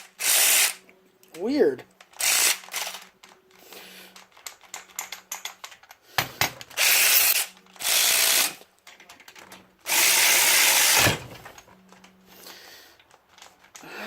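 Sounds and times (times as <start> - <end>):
cordless ratchet running: 0.2 - 0.8, 2.2 - 3.0, 6.8 - 8.6, 9.9 - 11.3.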